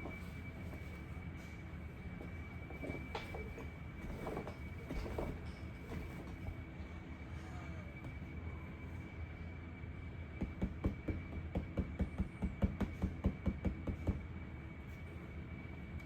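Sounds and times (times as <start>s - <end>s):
faint high whine: 0.0s - 11.4s
steady low hum: 0.0s - 16.0s.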